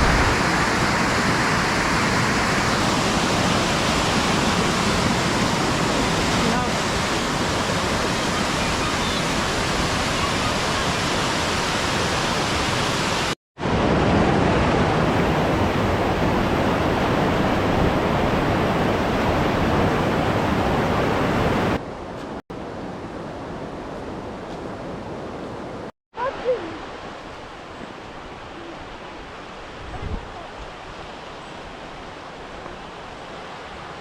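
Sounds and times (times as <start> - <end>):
waterfall rushing: 0.0 - 21.8.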